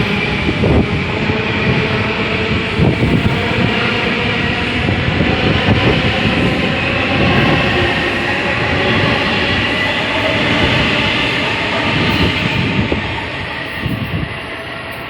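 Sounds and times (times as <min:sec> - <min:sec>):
train wheels rumbling on rails: 0:00.0 - 0:15.0.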